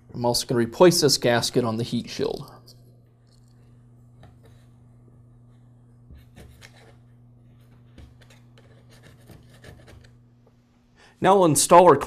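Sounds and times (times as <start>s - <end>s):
low electrical hum: 0.0s - 12.0s
small parts clicking and rubbing: 3.2s - 3.7s.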